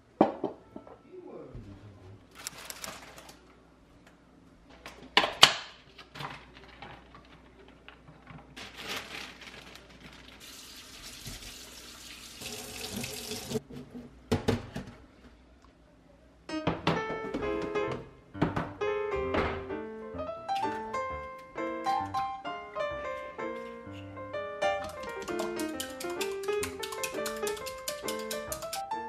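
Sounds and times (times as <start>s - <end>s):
tap running into a sink: 10.9s - 13.6s
dishes and utensils clinking: 23.6s - 28.8s.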